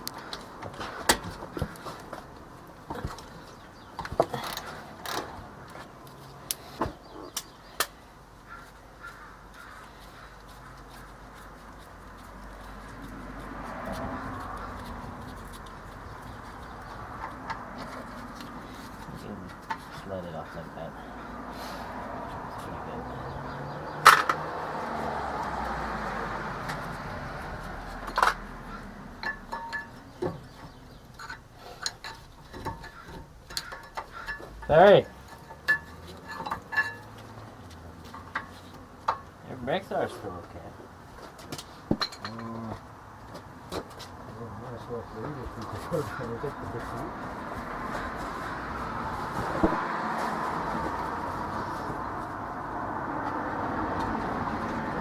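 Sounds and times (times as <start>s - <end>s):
hand tools clinking on metal: 29.1s - 30.5s, 31.1s - 39.4s, 41.9s - 42.9s
metal brake parts clanking: 29.2s - 37.3s.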